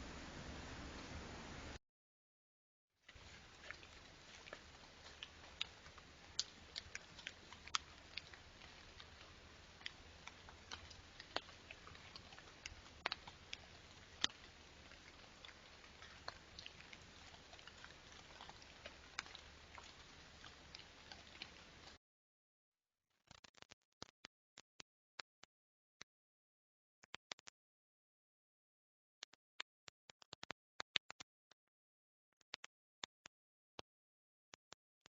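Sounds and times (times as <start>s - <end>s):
faint steady hiss: 0.0s - 1.8s, 3.0s - 22.0s.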